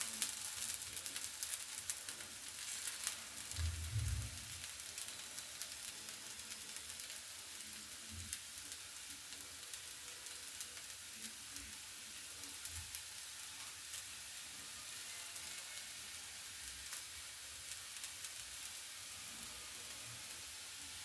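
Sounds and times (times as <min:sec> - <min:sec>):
food sizzling in a pan: 0:00.0 - 0:21.0
soft low thumps: 0:03.6 - 0:04.5.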